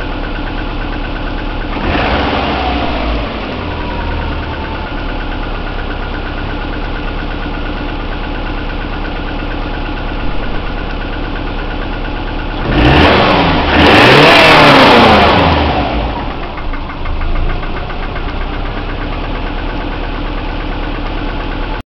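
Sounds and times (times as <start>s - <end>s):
car engine idling and knocking: 0.0s - 21.8s
engine revving: 1.7s - 6.6s, 10.1s - 11.4s, 12.6s - 19.3s.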